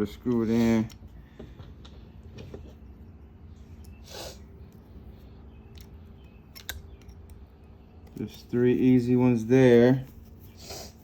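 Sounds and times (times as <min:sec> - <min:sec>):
small-room hum: 0:00.0 - 0:11.0
person sniffing: 0:04.0 - 0:04.5, 0:10.6 - 0:11.0.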